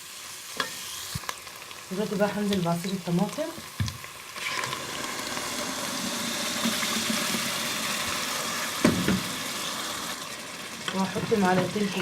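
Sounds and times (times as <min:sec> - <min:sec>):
onion sizzling in oil: 0:00.0 - 0:12.0.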